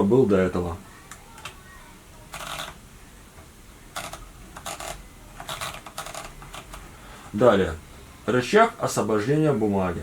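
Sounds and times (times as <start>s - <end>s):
typewriter platen rattling clicks: 4.0s - 6.8s.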